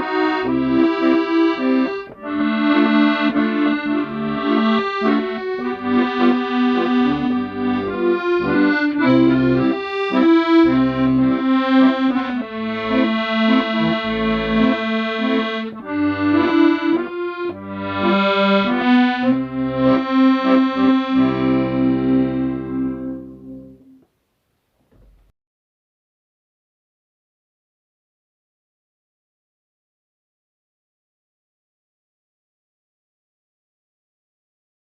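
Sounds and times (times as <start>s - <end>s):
accordion playing slow melody: 0.0s - 24.0s.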